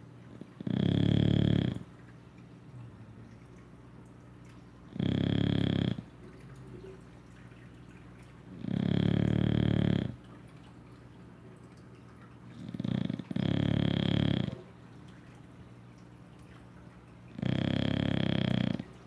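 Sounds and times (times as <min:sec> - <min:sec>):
dog snoring: 0:00.3 - 0:01.9, 0:04.9 - 0:06.1, 0:08.5 - 0:10.2, 0:12.5 - 0:14.7, 0:17.3 - 0:19.0
dog breathing quietly: 0:04.9 - 0:07.0, 0:08.6 - 0:10.3, 0:12.5 - 0:14.8, 0:17.3 - 0:19.0.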